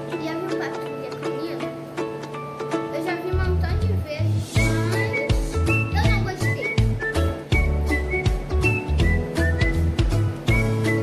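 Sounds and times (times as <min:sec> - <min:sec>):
bass line: 0:03.4 - 0:11.0
drum beat: 0:04.6 - 0:11.0
whistled melody: 0:04.6 - 0:11.0.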